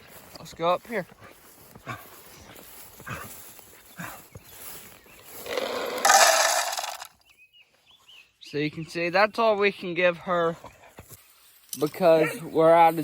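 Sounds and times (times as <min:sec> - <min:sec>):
dry kibble poured into bowl: 0:05.5 - 0:07.1.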